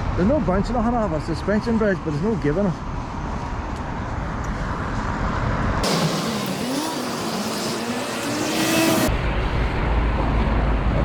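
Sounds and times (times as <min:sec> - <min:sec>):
vehicle driving past: 0:05.8 - 0:09.2.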